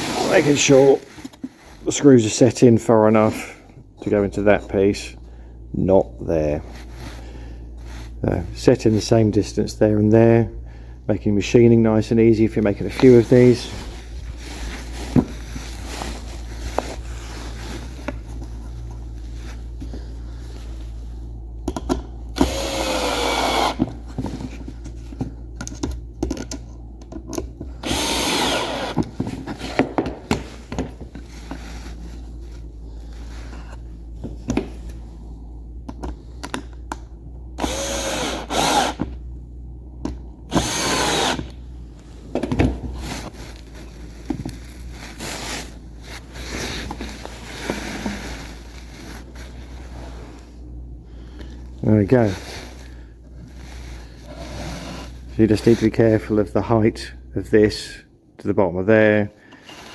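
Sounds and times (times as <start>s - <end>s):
clicks and knocks from handling parts: 21.6s - 22.5s, 23.8s - 27.8s, 35.8s - 37.2s
power drill driving screws into wood: 22.4s - 23.9s, 27.8s - 29.0s, 37.6s - 39.1s, 40.5s - 41.5s.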